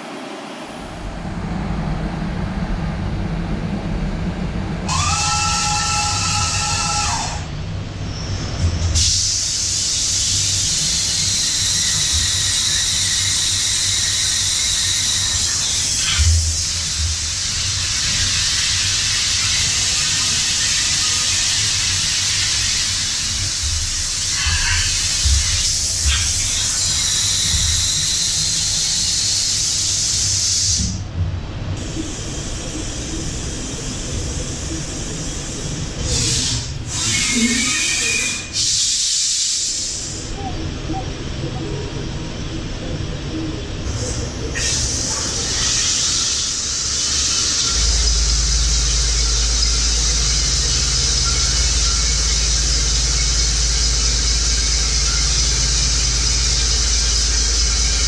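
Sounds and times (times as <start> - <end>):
low machine hum: 0.0 - 38.5, 39.8 - 58.0
hiss: 8.9 - 31.0, 31.8 - 40.5, 43.8 - 58.0
high-pitched metal cutting squeal: 24.2 - 28.4, 36.2 - 39.1.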